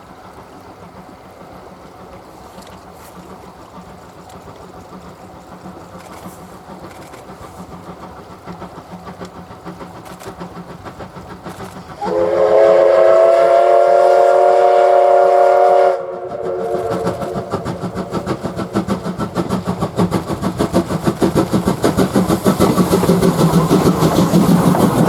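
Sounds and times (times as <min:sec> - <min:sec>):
steam locomotive running: 0:00.0 - 0:25.0
steam whistle blast: 0:12.0 - 0:17.7.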